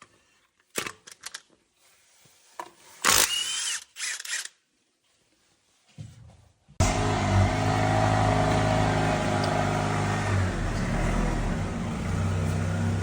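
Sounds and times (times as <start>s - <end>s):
power drill whining bursts: 3.1s - 4.5s.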